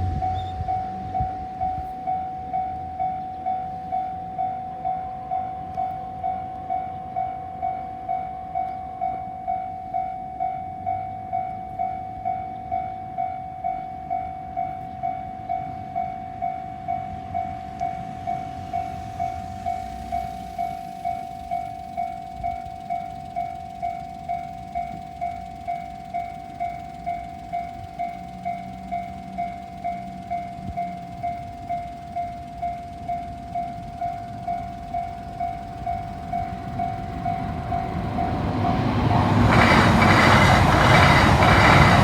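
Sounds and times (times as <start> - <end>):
level crossing warning bell: 0.0 - 42.0.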